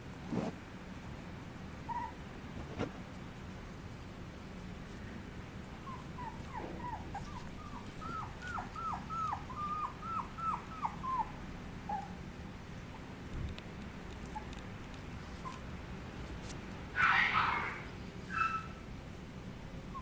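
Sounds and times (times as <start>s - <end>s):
puppy whimpering: 1.9s - 2.2s, 5.8s - 12.2s, 17.0s - 18.8s.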